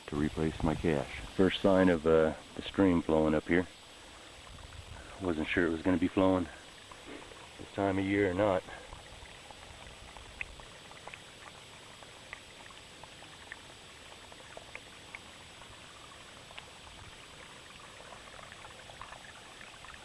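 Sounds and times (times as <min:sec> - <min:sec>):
stream trickling: 0:00.0 - 0:20.0
water plinks and splashes: 0:04.4 - 0:20.0.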